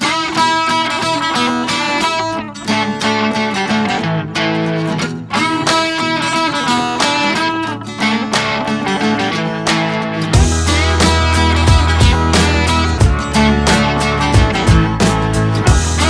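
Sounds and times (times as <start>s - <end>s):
strummed guitar music: 0.0s - 16.0s.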